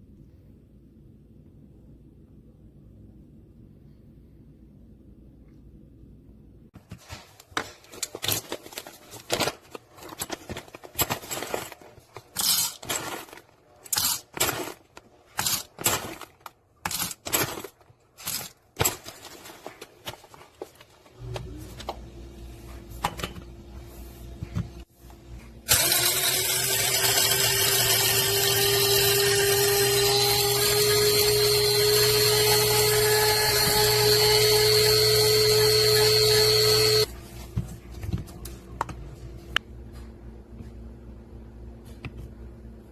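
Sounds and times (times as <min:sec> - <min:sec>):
coffee grinder motor whirring: 0:25.7 - 0:37.1.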